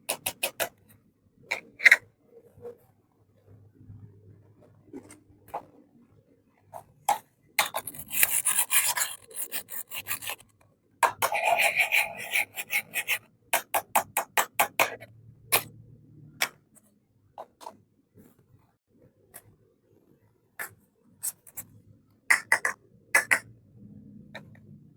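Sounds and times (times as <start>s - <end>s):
scratchy rubbing of plastic toys: 0.0s - 0.8s, 1.5s - 3.0s, 6.7s - 13.3s, 14.8s - 15.7s, 20.6s - 21.7s.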